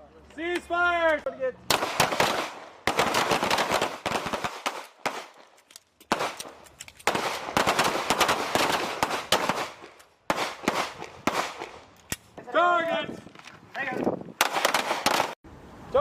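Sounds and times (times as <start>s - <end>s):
pistol shots: 1.7s - 5.4s, 6.1s - 11.8s, 14.4s - 15.4s.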